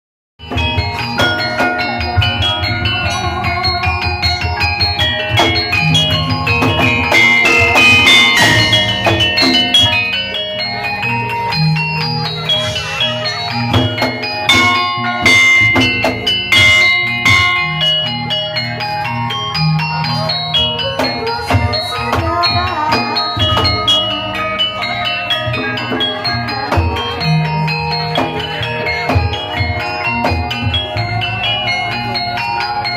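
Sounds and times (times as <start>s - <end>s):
drum strokes: 0.4s - 20.0s
gamelan music: 0.4s - 32.9s.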